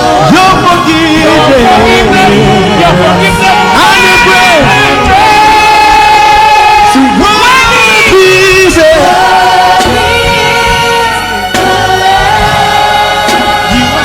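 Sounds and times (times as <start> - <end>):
band accompaniment: 0.0 - 14.0
people singing: 0.0 - 14.0.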